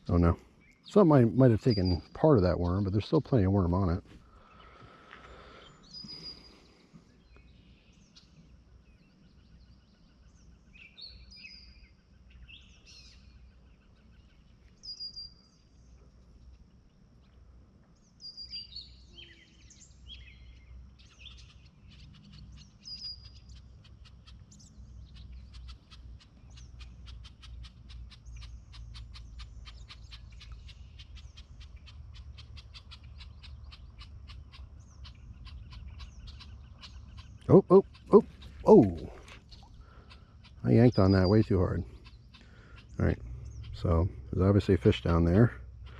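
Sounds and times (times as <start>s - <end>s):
small birds chirping: 0.0s - 45.9s
low steady rumble: 19.8s - 45.9s.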